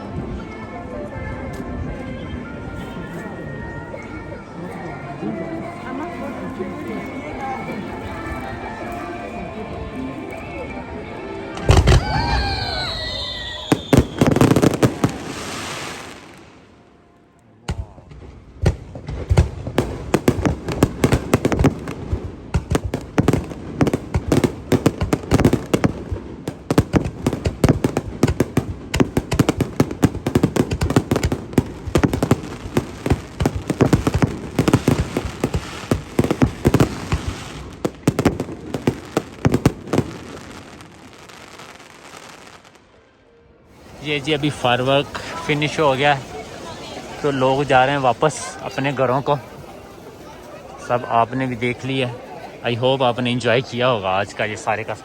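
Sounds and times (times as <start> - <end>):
fireworks booming: 11.6 - 16.7, 17.7 - 42.7
fireworks bangs and crackles: 11.6 - 16.8, 17.6 - 42.9, 43.7 - 55.0.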